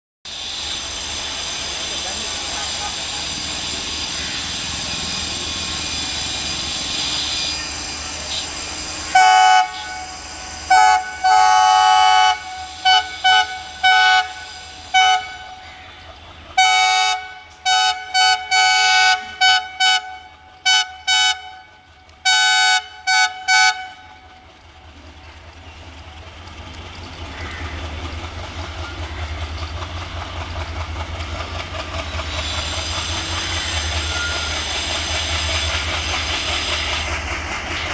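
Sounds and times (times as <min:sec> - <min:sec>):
diesel engine rumbling: 0:00.8 - 0:37.9
train air horn blasts: 0:09.1 - 0:10.1, 0:10.7 - 0:15.6, 0:16.6 - 0:24.1.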